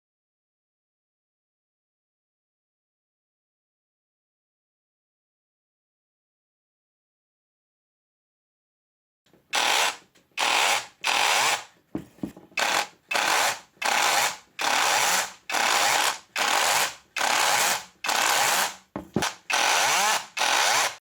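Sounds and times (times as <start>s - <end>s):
cordless drill bursts: 9.5s - 11.7s, 12.6s - 21.0s.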